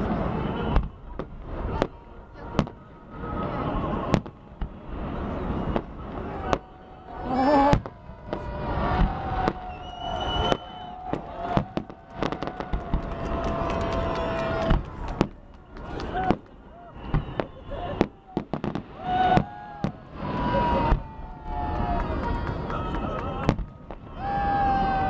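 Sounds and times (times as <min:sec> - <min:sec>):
fireworks bursting with bangs: 0:00.0 - 0:25.0.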